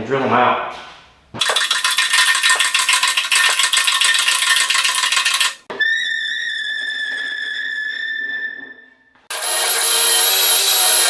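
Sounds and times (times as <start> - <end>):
fast dense rattling clatter: 1.4 - 5.6
electric drill whining: 9.3 - 11.0.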